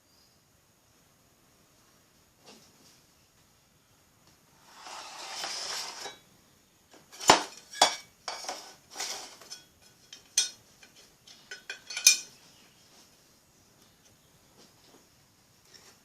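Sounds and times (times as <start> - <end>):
metallic clinks and clatters: 9.4 - 12.4.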